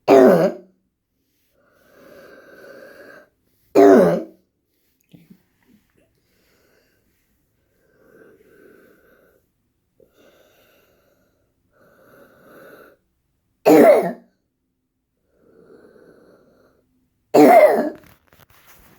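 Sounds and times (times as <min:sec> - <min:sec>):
person coughing: 0:00.1 - 0:00.6, 0:03.8 - 0:04.3, 0:13.7 - 0:14.2, 0:17.4 - 0:18.0
wheezing breathing: 0:01.3 - 0:03.7, 0:06.2 - 0:13.1.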